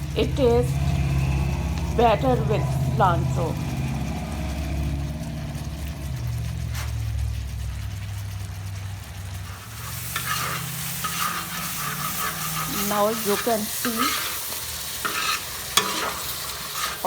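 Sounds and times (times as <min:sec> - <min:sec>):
low steady hum: 0:00.0 - 0:14.6
food sizzling in oil: 0:00.0 - 0:17.0
spatula scraping: 0:09.5 - 0:17.0.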